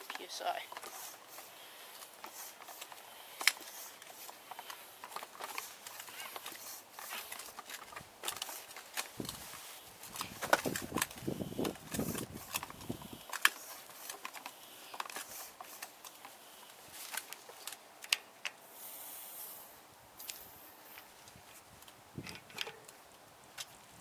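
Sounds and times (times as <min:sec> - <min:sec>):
short hiss: 0:18.6 - 0:21.1
objects clicking and knocking: 0:22.2 - 0:23.0.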